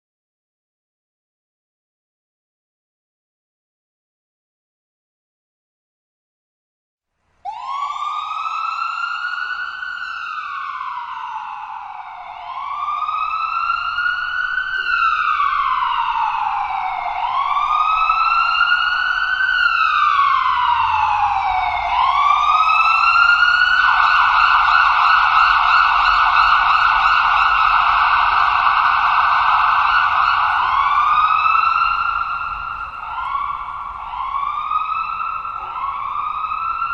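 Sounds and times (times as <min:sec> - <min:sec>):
ambulance siren: 0:07.4 - 0:36.9.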